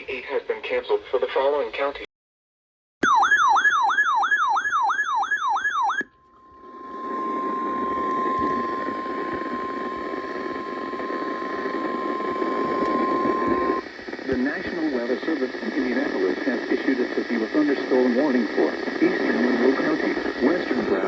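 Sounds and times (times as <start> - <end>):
siren-like sweeping alert tone: 3.0 - 13.8
steady alarm tone: 3.0 - 14.0
radio static: 6.6 - 21.0.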